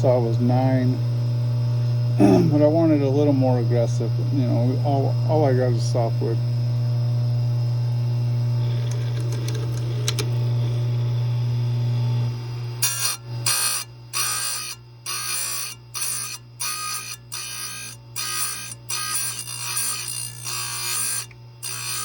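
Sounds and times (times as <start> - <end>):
grinder motor humming: 0.0 - 22.0
grinding wheel on chain: 12.8 - 22.0.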